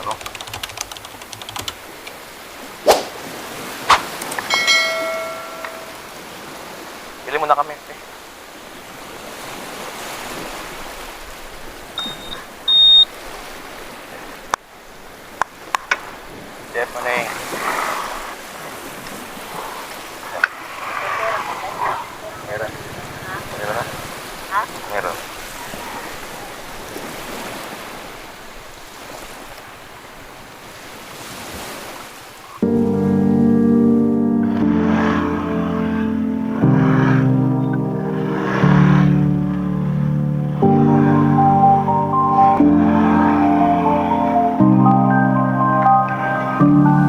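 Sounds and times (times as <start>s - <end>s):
beach surf rushing: 0.0s - 47.0s
wind: 0.0s - 47.0s
short high electronic beeps: 12.0s - 13.1s.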